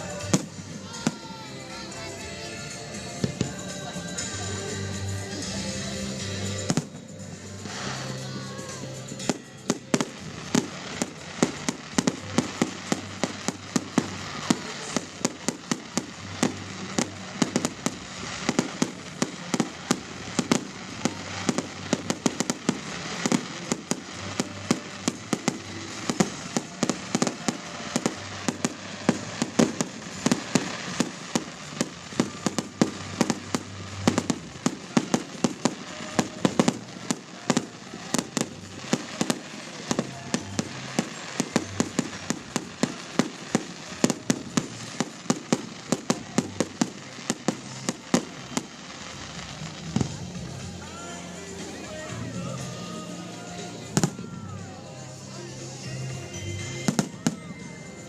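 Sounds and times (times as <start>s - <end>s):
fireworks bangs and cracks: 0.0s - 58.0s.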